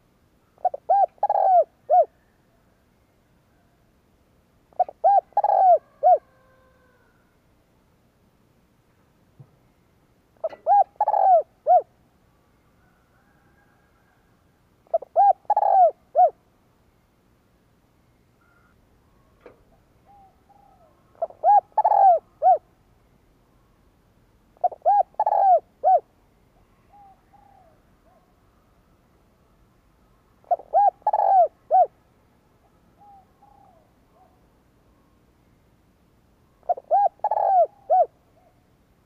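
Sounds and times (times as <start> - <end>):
dove cooing: 0.6 - 2.4, 4.7 - 7.4, 10.4 - 12.0, 14.8 - 16.4, 18.4 - 22.7, 24.6 - 28.3, 30.4 - 32.0, 33.0 - 34.4, 36.6 - 38.6.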